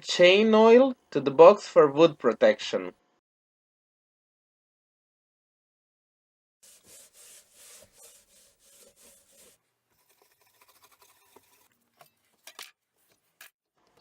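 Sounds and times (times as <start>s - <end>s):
cloth rubbing over wood: 6.6s - 9.6s.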